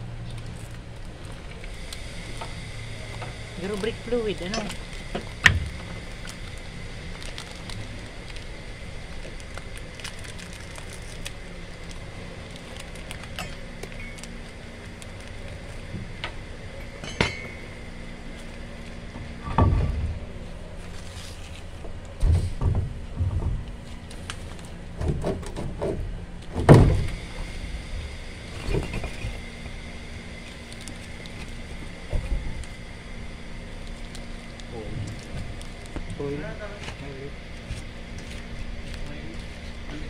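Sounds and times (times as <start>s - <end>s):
steady low hum: 0.0s - 40.0s
metal tools clinking and knocking: 16.8s - 17.7s.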